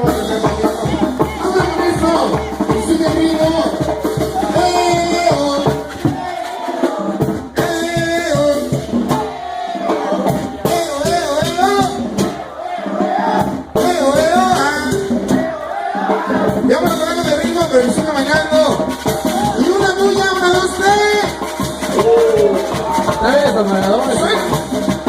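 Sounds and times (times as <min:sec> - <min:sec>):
drum beat: 0:00.0 - 0:25.0
shaker-like percussion: 0:00.0 - 0:25.0
dance music: 0:16.7 - 0:25.0.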